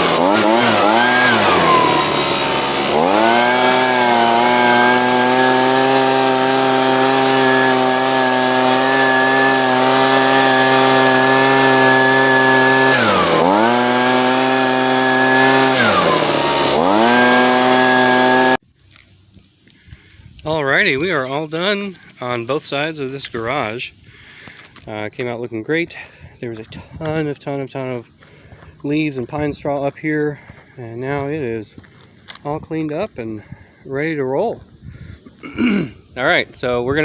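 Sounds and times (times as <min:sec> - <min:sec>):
leaf blower running: 0:00.0 - 0:18.6.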